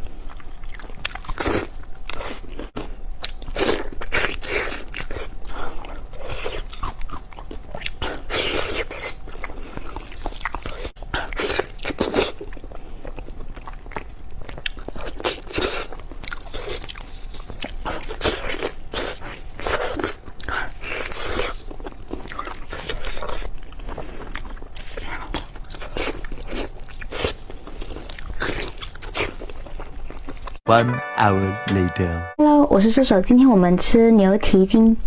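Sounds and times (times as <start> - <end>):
person chewing meat: 0.0 - 30.6.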